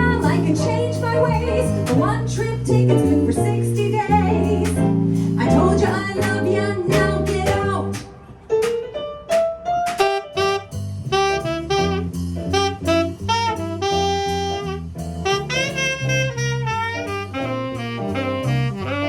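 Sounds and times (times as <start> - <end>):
light percussion: 0.0 - 19.0
upright bass walking: 0.0 - 19.0
jazz tenor saxophone solo: 9.9 - 19.0.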